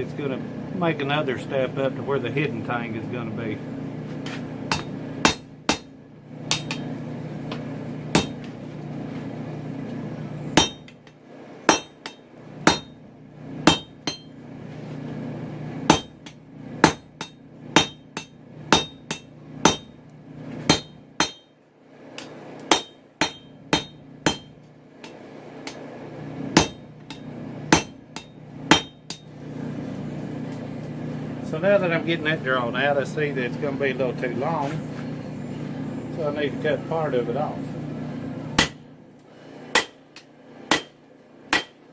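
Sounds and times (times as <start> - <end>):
steady low hum: 0.0 - 41.9
hammer striking steel on anvil: 4.7 - 5.9, 6.5 - 6.9, 8.1 - 8.4, 10.6 - 13.0, 13.7 - 14.4, 15.9 - 19.9, 20.7 - 21.6, 22.2 - 25.8, 26.6 - 29.3, 38.6 - 38.8, 39.7 - 41.8.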